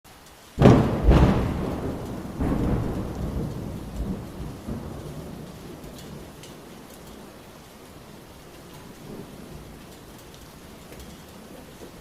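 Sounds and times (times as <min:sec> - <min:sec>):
rain hissing: 0:00.1 - 0:12.0
thunder rolling: 0:00.6 - 0:06.9.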